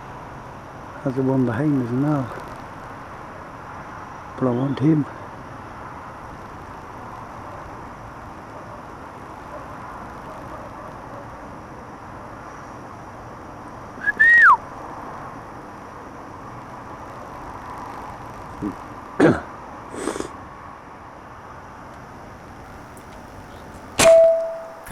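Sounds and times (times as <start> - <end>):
falling whistle: 14.0 - 14.6.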